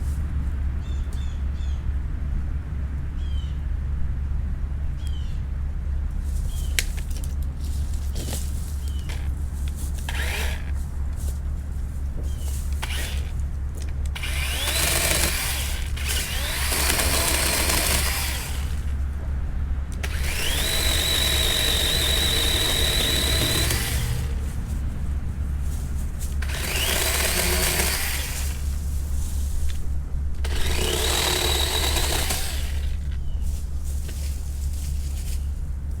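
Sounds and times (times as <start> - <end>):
electric chainsaw cutting branch: 8.8 - 10.8, 12.6 - 19.0, 19.9 - 24.6, 26.1 - 33.2.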